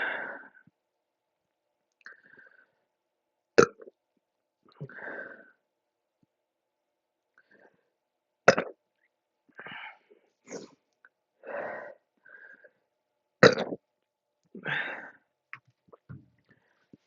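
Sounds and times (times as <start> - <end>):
woman burping: 8.5 - 8.7, 13.4 - 13.8.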